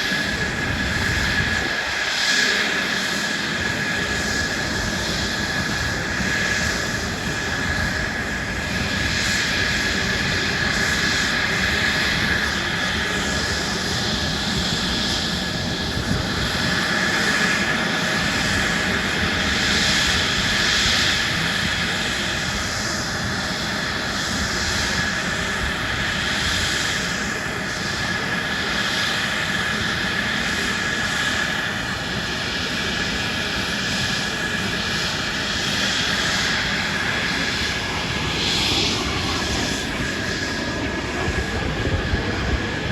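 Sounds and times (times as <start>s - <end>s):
airplane engine in flight: 0.0s - 42.9s.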